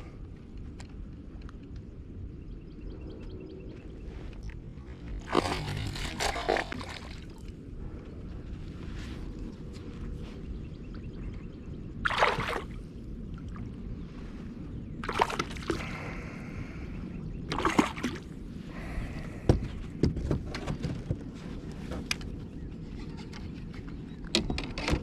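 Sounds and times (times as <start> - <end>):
steady low rumble: 0.0 - 20.0
water splashing against kayak: 4.4 - 7.5, 12.0 - 12.8, 15.0 - 16.0, 17.5 - 18.3.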